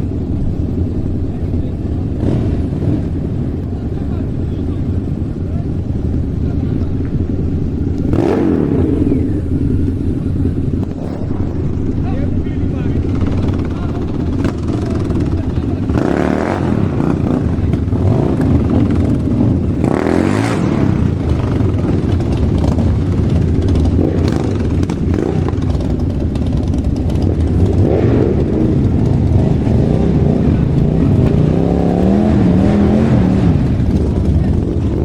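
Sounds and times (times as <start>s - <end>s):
motorcycle engine running: 0.0s - 35.0s.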